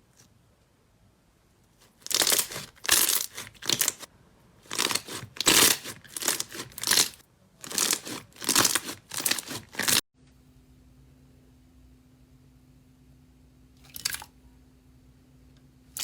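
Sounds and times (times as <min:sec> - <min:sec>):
slime squelching: 0:01.8 - 0:10.0.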